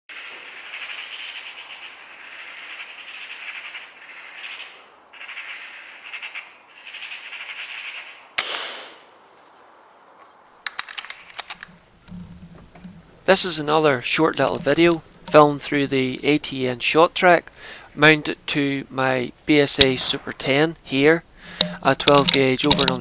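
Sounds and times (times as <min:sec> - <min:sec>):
gunshot: 0:08.4 - 0:09.0
sharp clicks: 0:10.6 - 0:18.6, 0:19.5 - 0:23.0.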